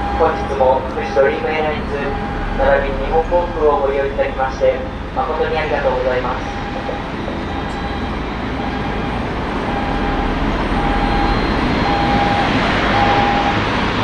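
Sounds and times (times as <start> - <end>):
jet engine roar: 0.0 - 14.0
electronic beep: 6.4 - 13.6.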